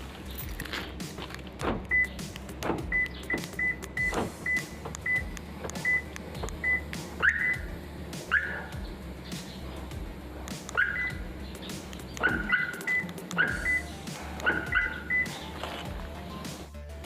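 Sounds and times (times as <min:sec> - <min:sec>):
car alarm beeps: 0:01.9 - 0:02.2, 0:02.9 - 0:07.7, 0:10.7 - 0:11.2, 0:12.2 - 0:15.4.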